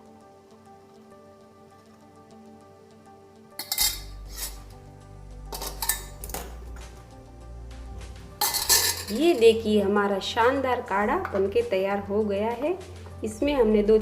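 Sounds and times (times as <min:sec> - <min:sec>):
soft background music: 0:00.0 - 0:14.0
metal utensils clinking: 0:03.6 - 0:04.7, 0:05.5 - 0:06.5, 0:08.4 - 0:09.6.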